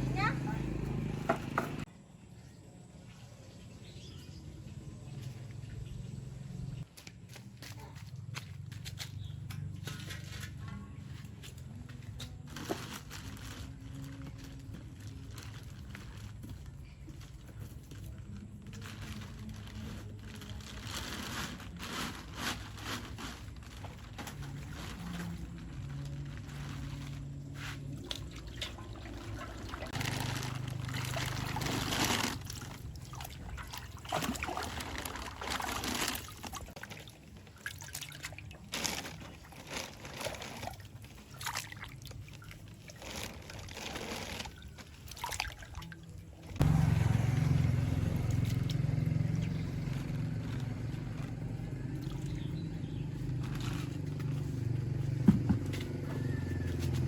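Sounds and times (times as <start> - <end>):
small engine running: 0.0 - 1.8, 46.6 - 57.0
faint low engine hum: 0.0 - 57.0
water sloshing and trickling: 2.9 - 57.0.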